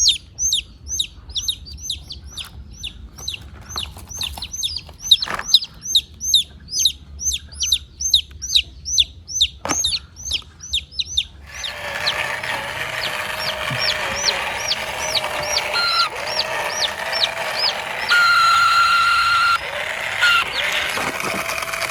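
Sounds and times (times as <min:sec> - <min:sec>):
baby bird peeping: 0:00.0 - 0:21.9
mechanical hum: 0:11.0 - 0:21.9
steady whine: 0:11.4 - 0:21.9.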